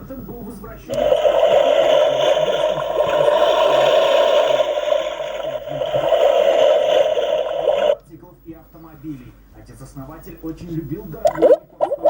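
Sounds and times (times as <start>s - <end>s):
alarm clock buzzing: 0.9s - 8.0s.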